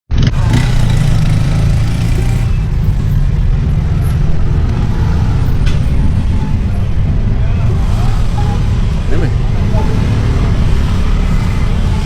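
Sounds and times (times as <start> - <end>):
vehicle engine rumbling: 0.1 - 12.0.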